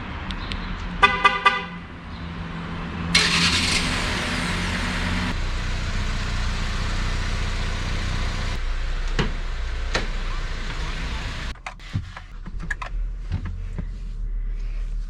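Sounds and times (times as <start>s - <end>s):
car horn chirp: 1.0s - 1.8s
car engine cranking and idling: 3.1s - 14.7s.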